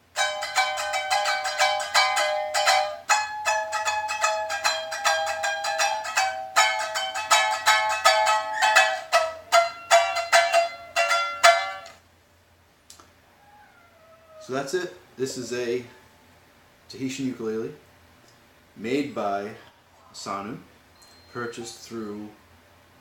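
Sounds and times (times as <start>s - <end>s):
ukulele strummed brightly: 0.0s - 12.0s.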